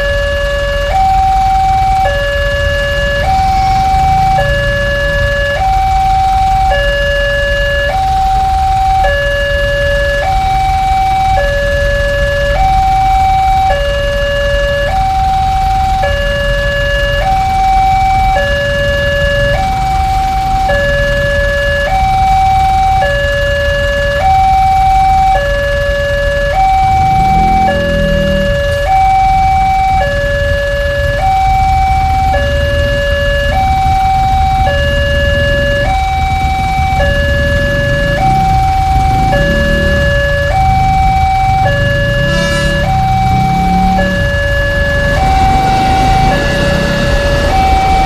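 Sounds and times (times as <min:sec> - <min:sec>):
two-tone warning siren: 0:00.0 - 0:48.0
steady low rumble: 0:43.0 - 0:48.0.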